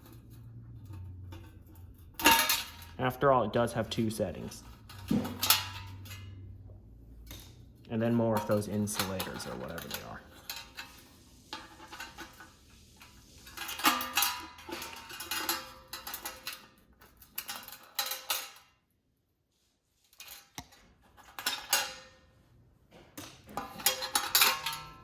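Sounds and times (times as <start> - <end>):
small metal parts clinking: 23.6 - 25.0.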